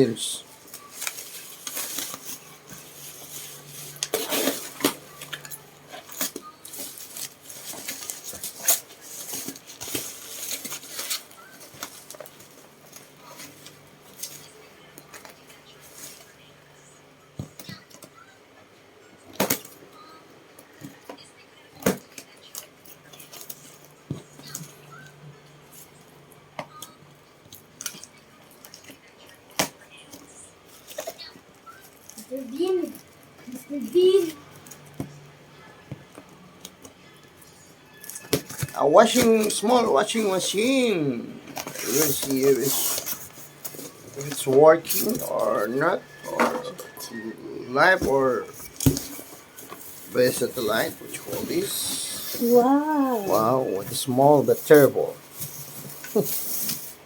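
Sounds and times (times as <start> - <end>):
packaging and plastic rustling: 0.5 - 16.4, 38.0 - 57.0.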